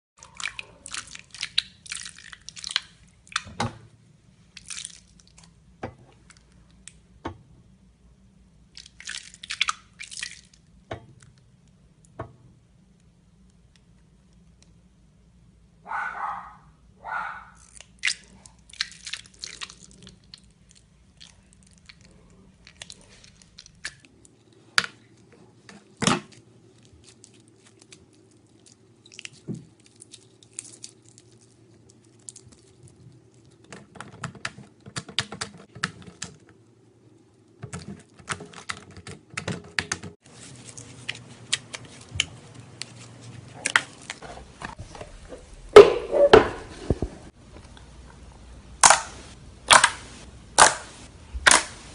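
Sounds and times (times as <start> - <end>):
slime clicking and crackling: 26.8 - 33.7.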